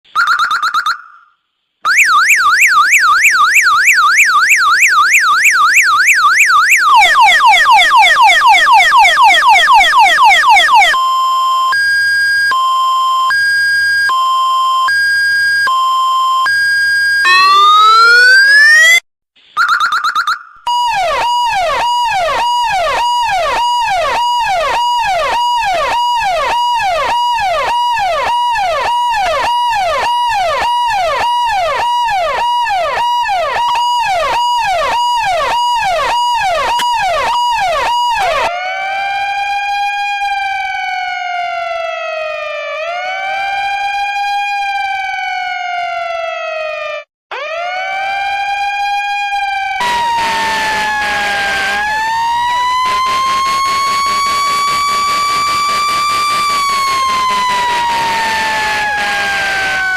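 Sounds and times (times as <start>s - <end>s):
emergency vehicle siren: 1.9s - 19.0s, 19.6s - 59.9s.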